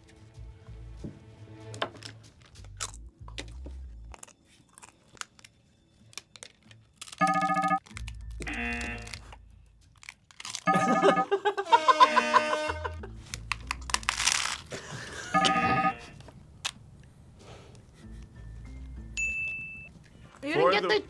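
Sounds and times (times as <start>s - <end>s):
food packaging crinkling: 2.0s - 3.4s, 4.1s - 10.7s, 13.2s - 17.8s
taco shells crunching: 2.0s - 11.0s, 13.2s - 18.0s.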